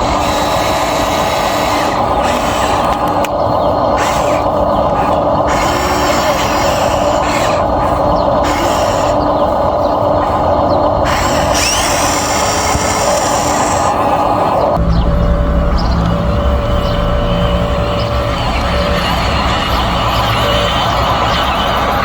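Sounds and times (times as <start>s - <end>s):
small electric motors whirring: 0.0s - 14.8s.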